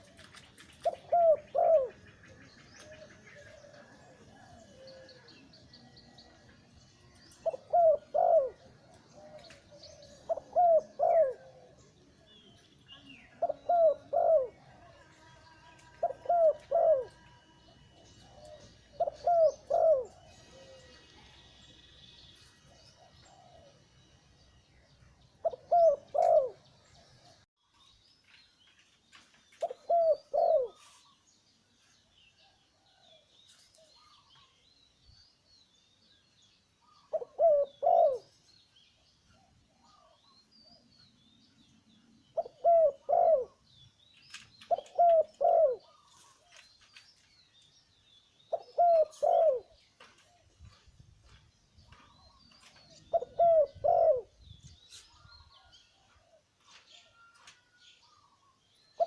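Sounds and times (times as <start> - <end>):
dove cooing: 0.0 - 6.4, 7.3 - 12.3, 13.3 - 15.0, 15.9 - 21.3, 22.7 - 23.8, 25.4 - 27.4, 29.6 - 30.9, 36.9 - 38.4, 42.4 - 43.7, 44.6 - 46.6, 48.5 - 50.4, 52.2 - 54.4
faint small birds chirping: 0.0 - 59.0.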